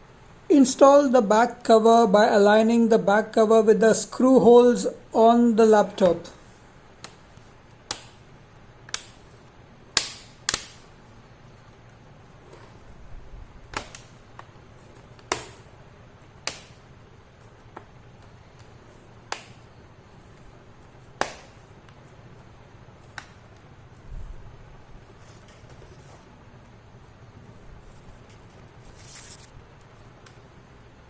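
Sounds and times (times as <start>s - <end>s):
plastic laptop cover snapping: 9.9s - 10.9s, 13.7s - 14.2s, 16.4s - 16.8s, 21.2s - 21.6s.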